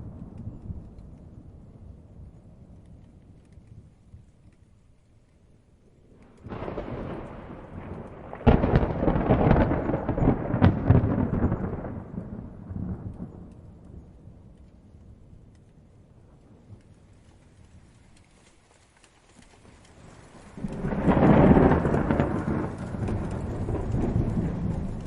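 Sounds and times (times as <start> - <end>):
light rain: 0.0 - 25.0
thunder rumbling and crashing: 6.3 - 14.6, 20.3 - 25.0.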